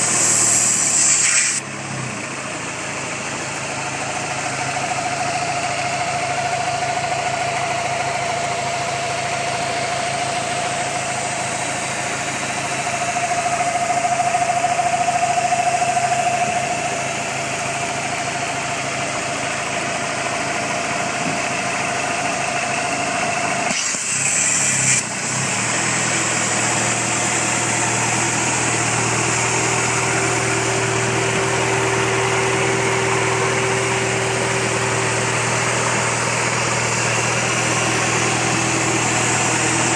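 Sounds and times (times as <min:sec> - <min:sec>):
car engine idling: 0:00.0 - 0:39.9
steady whine: 0:07.8 - 0:14.7.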